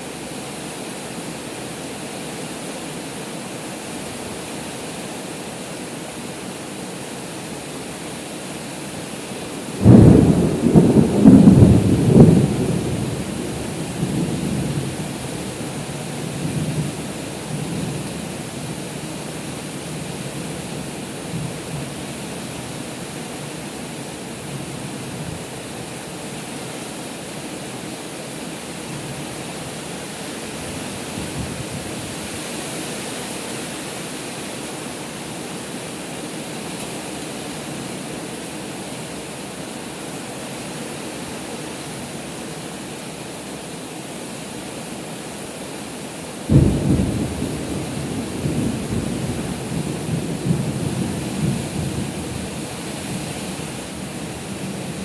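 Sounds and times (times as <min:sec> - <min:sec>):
heavy rain pouring: 0:00.0 - 0:55.0
low rumble of thunder: 0:09.8 - 0:18.1, 0:46.5 - 0:55.0.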